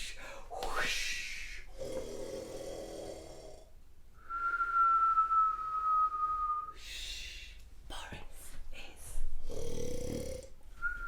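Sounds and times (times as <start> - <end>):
person making snore-like voice: 1.4 - 3.7, 9.4 - 10.5.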